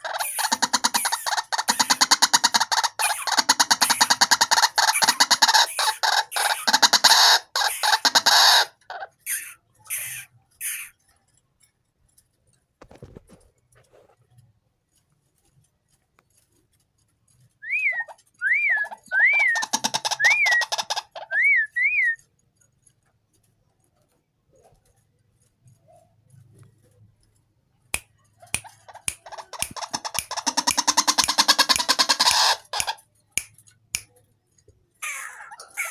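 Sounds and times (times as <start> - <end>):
harsh rattling croak: 0.0 - 11.0, 19.5 - 21.3, 28.6 - 33.1
rattling bird calls: 0.0 - 13.0, 16.3 - 27.1, 28.1 - 35.9
bird whistled notes: 17.6 - 22.2.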